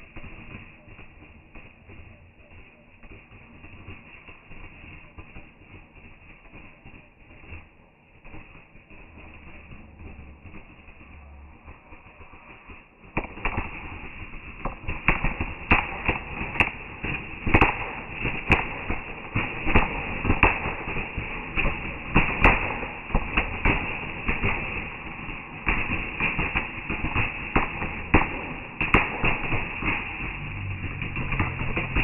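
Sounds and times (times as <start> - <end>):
fireworks bangs and cracks: 0.0 - 32.0.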